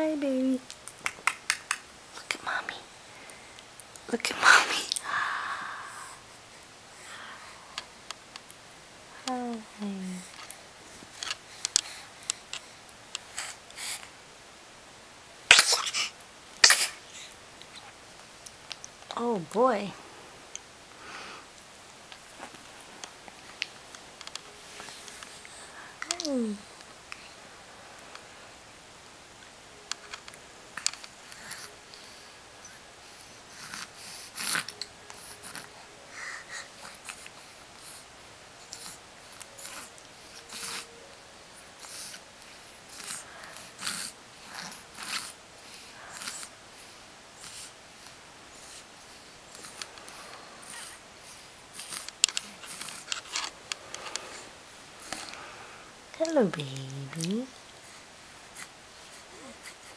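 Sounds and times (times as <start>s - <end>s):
soft breaths: 2.1s - 14.4s, 19.8s - 28.9s, 30.8s - 59.9s
baby sneezing: 15.5s - 17.0s
baby snuffly breathing and sniffs: 15.5s - 17.3s, 33.5s - 38.1s, 42.9s - 46.6s.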